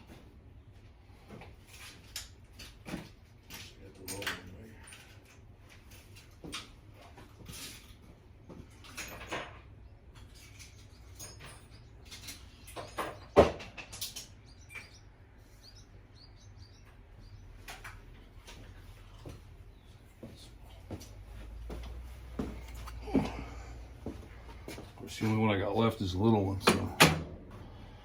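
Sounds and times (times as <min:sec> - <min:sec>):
tools and bolts clinking on metal: 0:01.3 - 0:15.1, 0:26.4 - 0:27.3.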